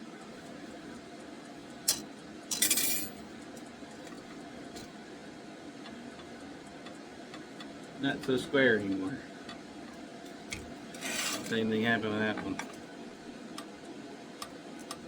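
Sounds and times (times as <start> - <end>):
metal tools clinking: 1.9 - 3.2.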